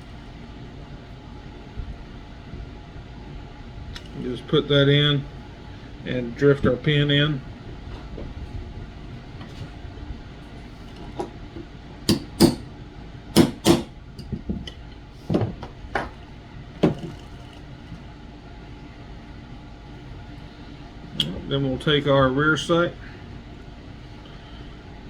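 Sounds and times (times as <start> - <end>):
hammer tapping a punch: 12.1 - 12.7, 13.4 - 14.4.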